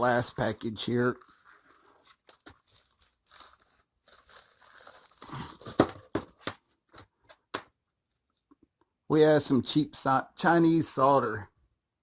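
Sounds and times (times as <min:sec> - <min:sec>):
package packaging crinkling and rustling: 0:00.0 - 0:07.5.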